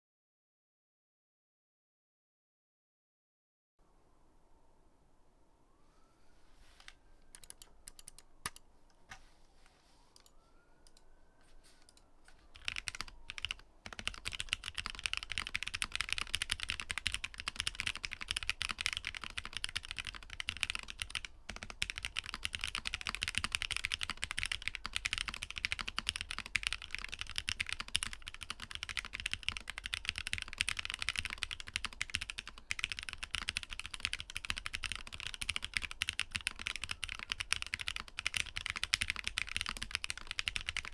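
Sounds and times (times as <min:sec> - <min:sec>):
mechanical keyboard typing: 0:07.3 - 0:08.6, 0:11.8 - 0:40.9.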